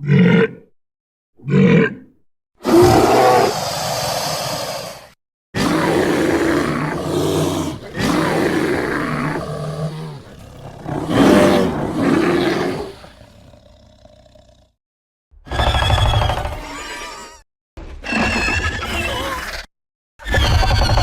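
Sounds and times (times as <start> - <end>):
demon growling roars: 2.6 - 14.8.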